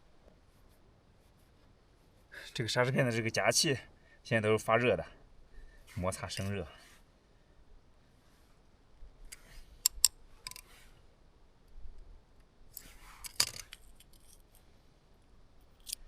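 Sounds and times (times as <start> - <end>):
sharp clicks: 9.3 - 10.6
metal clicks and scrapes of brake pads: 9.3 - 10.8, 12.8 - 14.6.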